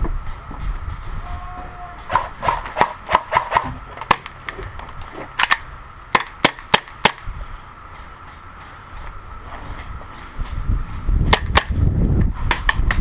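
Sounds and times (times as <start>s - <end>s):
airsoft gun shots: 2.1s - 4.3s, 11.3s - 11.8s.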